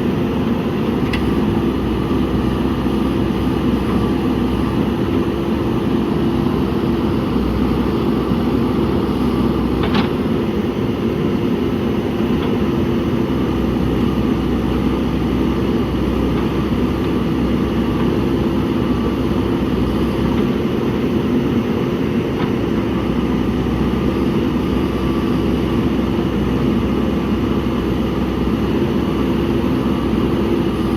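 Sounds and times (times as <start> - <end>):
diesel engine running: 0.0 - 30.9.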